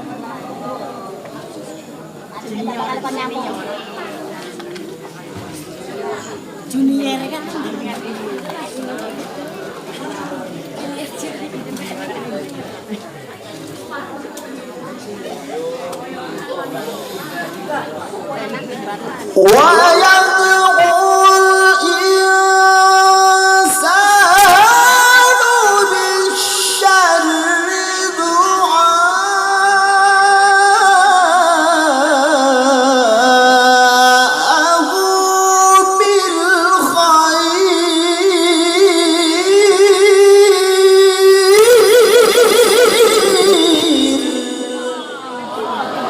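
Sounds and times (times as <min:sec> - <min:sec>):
man reciting melodically: 0:19.3 - 0:46.0.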